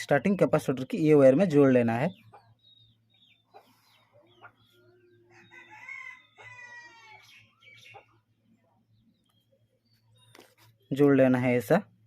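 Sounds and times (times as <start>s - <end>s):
rooster crowing: 5.3s - 7.3s.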